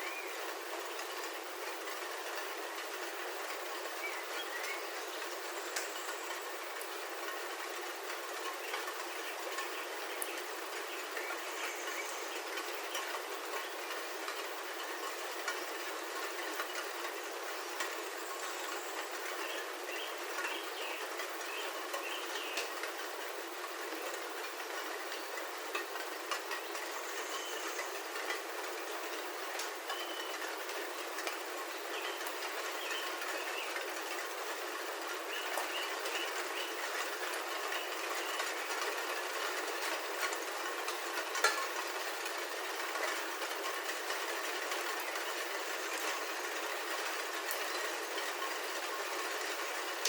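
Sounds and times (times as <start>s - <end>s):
rain pattering on a roof: 0.0s - 50.0s
bird chirps: 4.0s - 6.4s, 18.2s - 22.7s, 26.6s - 28.0s, 29.9s - 30.4s, 31.7s - 33.9s, 35.3s - 37.0s.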